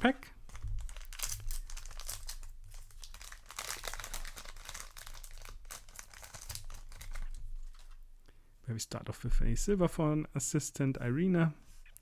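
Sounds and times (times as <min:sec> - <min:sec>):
foil wrapper crinkling and tearing: 0:00.4 - 0:08.0.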